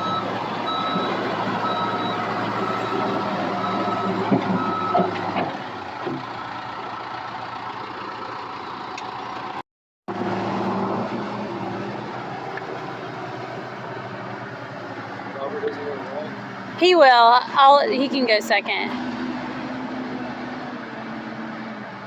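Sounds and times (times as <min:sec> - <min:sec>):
travel alarm beeping: 0:00.0 - 0:03.0
excavator engine running: 0:00.0 - 0:22.0.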